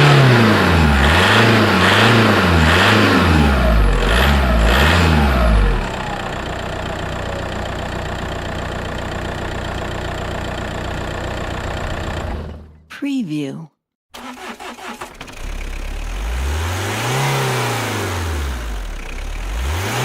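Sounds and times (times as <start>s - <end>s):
car engine revving and idling: 0.0s - 12.8s, 14.8s - 20.0s.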